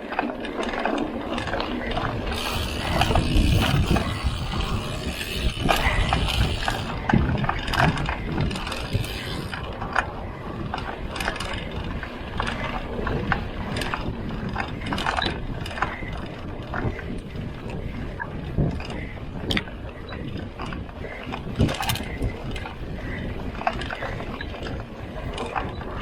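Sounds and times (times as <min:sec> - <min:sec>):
bike clicks and rattles: 0:00.0 - 0:26.0
freewheel ratchet ticking: 0:02.2 - 0:07.0, 0:08.5 - 0:09.6.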